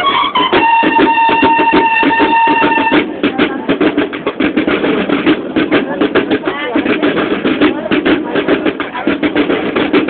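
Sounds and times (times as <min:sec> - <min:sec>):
bugles holding a long note: 0:00.0 - 0:03.1
fast steady drum beats: 0:00.0 - 0:10.0.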